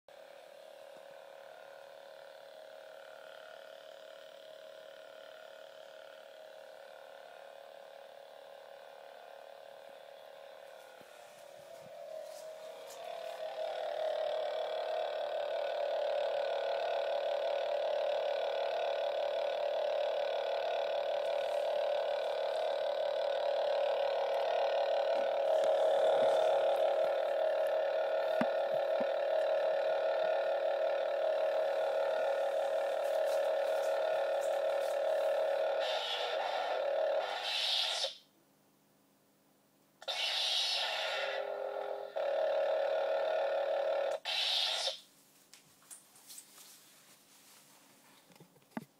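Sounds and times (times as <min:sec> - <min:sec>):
steady electronic tone: 0:07.2 - 0:38.3, 0:40.0 - 0:45.1.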